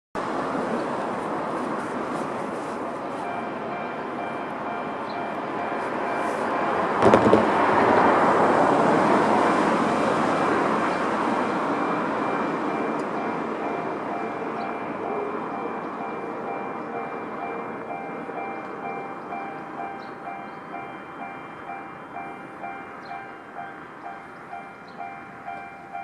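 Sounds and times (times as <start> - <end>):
passing vehicle rumble: 0.2 - 26.0
level crossing warning bells: 2.4 - 26.0.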